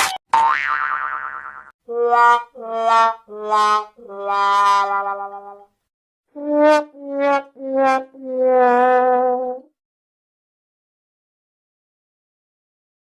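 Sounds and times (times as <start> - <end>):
sad trombone sound effect: 1.9 - 5.6, 6.4 - 9.6.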